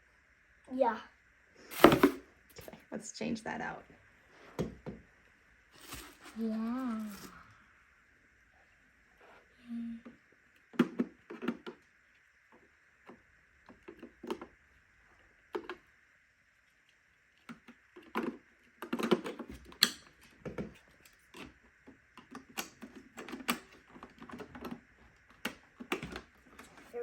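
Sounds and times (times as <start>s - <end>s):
faint high hum: 0.0s - 18.7s, 24.6s - 27.0s
plastic parts clicking and knocking: 10.7s - 11.8s, 17.4s - 26.8s.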